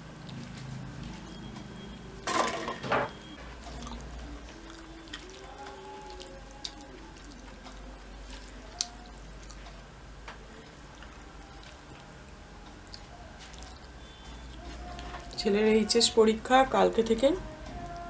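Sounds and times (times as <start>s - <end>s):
person eating and chewing: 0.0s - 2.3s, 3.5s - 9.8s, 10.6s - 15.4s.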